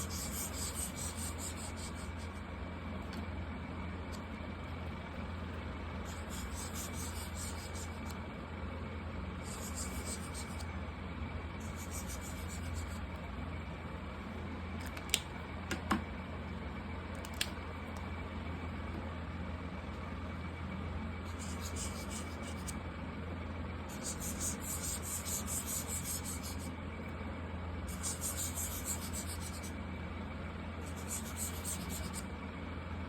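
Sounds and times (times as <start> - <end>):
markers scratching on paper: 0.0 - 2.4, 6.1 - 8.1, 9.4 - 10.7, 11.6 - 13.0, 21.3 - 22.8, 23.9 - 26.7, 27.9 - 29.8, 30.8 - 32.2.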